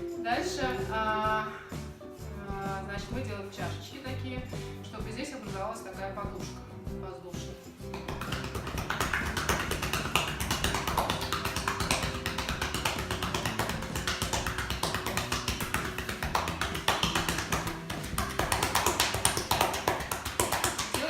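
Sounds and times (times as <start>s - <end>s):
background music: 0.0s - 21.0s
cupped palms patting skin: 7.8s - 21.0s.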